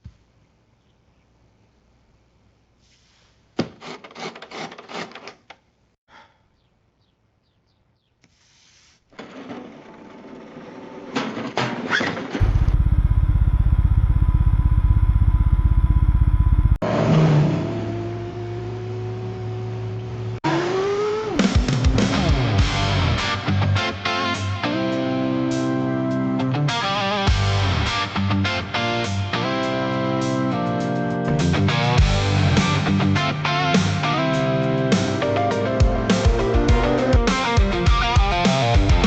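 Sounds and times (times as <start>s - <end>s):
pulsing engine drone: 12.4s - 20.4s
car engine rising in pitch: 12.4s - 22.2s.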